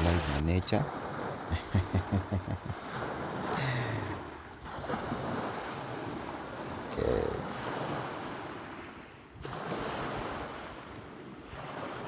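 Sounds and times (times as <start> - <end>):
lake water washing on shore: 0.0 - 12.0
person's voice making short sounds: 1.5 - 2.0, 6.9 - 7.6.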